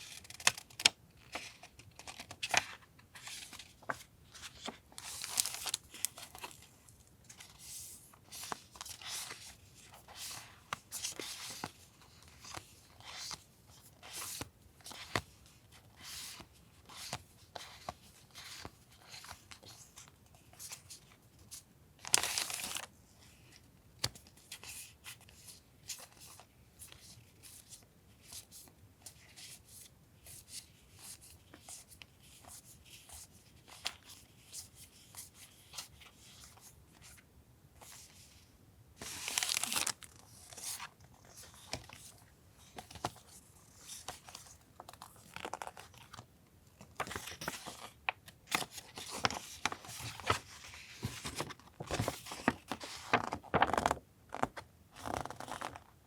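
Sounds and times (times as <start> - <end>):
paper rustling and crinkling: 0.0 - 21.0, 39.0 - 55.8.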